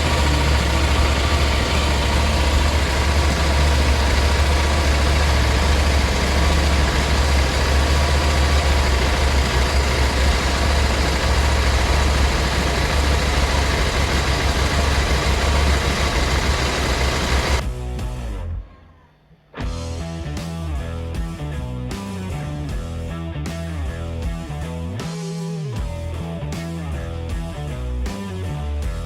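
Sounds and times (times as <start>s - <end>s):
motorcycle engine idling: 0.0s - 17.6s.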